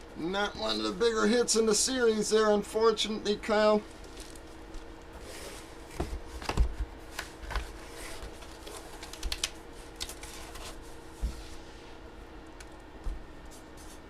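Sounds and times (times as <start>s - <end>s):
faint steady hum: 0.0s - 14.0s
hands handling packaging: 3.9s - 10.9s.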